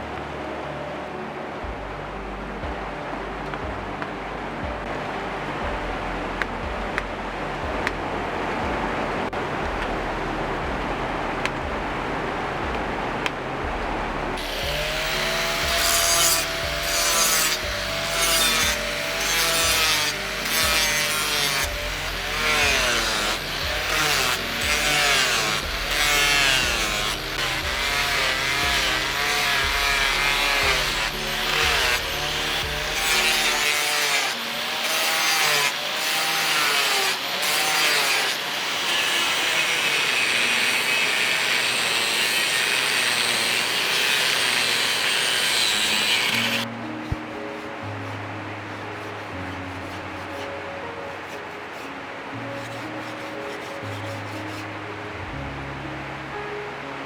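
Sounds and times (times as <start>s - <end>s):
low steady noise: 0.0s - 15.5s
saw or file scraping with squeal: 14.4s - 54.7s.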